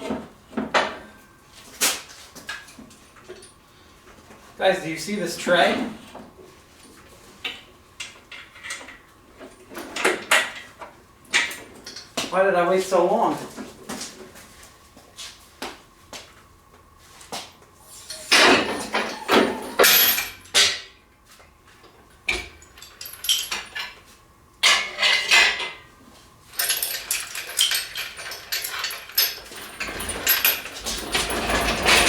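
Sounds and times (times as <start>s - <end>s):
metal tools clattering in tray: 18.1s - 20.4s, 26.6s - 32.0s.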